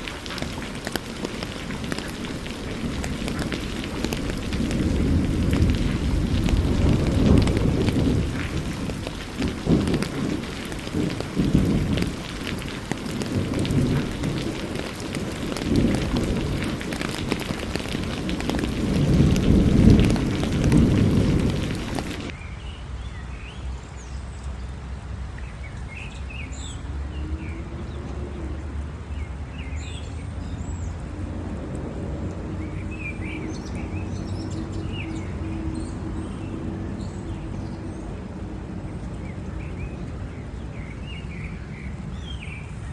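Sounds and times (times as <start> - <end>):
birds chirping: 0.0 - 24.8
heavy rain with rumbling: 0.0 - 42.9.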